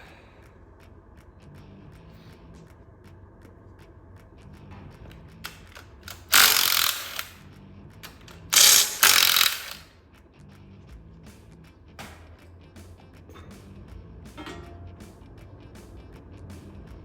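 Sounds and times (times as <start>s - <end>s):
ratchet tool bursts: 5.4s - 9.9s.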